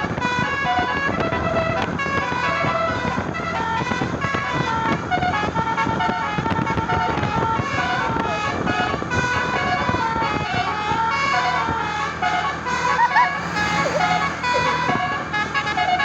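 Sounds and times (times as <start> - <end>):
road noise: 0.0 - 16.0
vehicle engine rumble: 0.0 - 16.0
musical air horn melody: 11.9 - 16.0.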